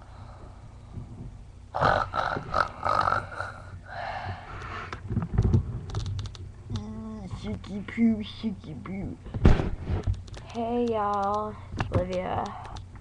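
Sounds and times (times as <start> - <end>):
person snoring: 1.7 - 4.4.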